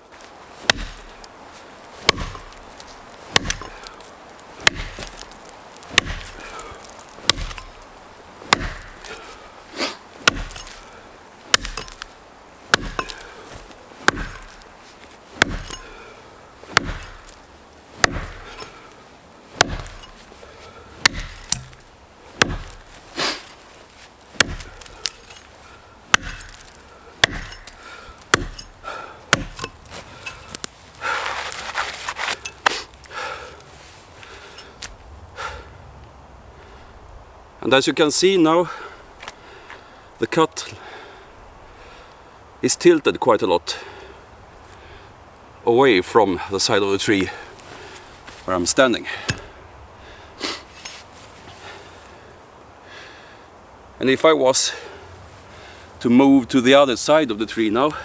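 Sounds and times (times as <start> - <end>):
axe chopping tree trunk: 0.6 - 1.4, 2.0 - 23.5, 24.3 - 33.2, 47.3 - 49.6.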